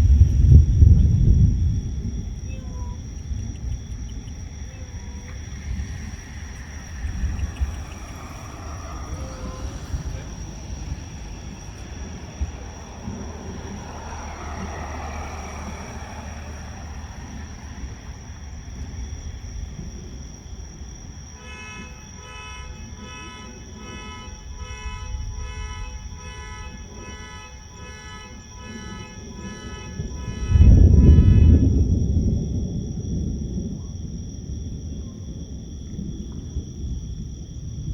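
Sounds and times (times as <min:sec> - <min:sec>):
low rumble of wind and sea: 0:00.0 - 0:14.3, 0:16.4 - 0:21.4, 0:29.2 - 0:37.9
thunder boom: 0:00.0 - 0:37.9
pulsing tone: 0:21.4 - 0:31.8.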